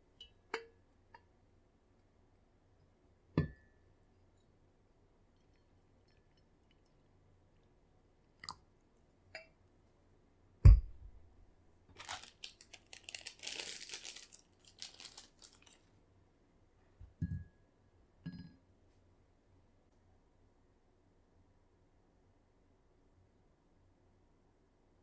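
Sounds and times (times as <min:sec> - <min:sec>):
heavy thump on work surface: 0:10.7 - 0:11.2
dry crunching and crinkling: 0:11.9 - 0:15.9.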